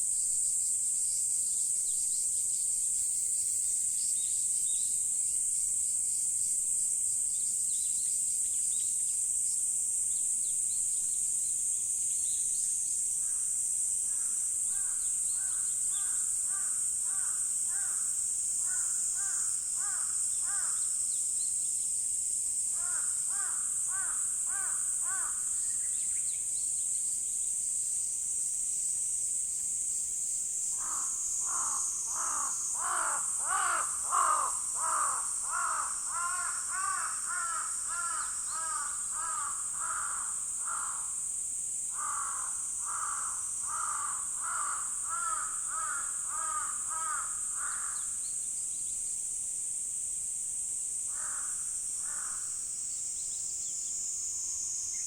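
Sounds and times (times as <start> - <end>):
high-pitched insect chorus: 0.0 - 55.0
crow cawing: 14.1 - 20.8, 22.8 - 25.5, 30.8 - 41.1, 41.9 - 48.1, 51.1 - 52.5.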